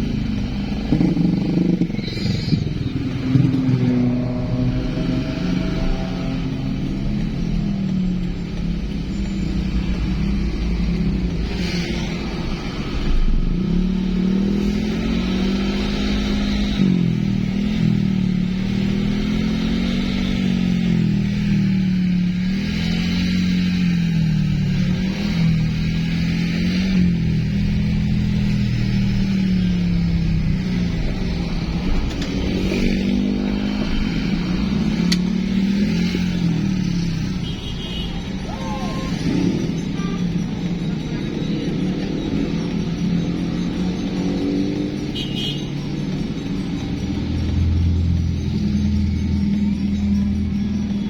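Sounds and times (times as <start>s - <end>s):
road and wind noise: 0.0s - 51.0s
vehicle engine hum: 0.0s - 51.0s.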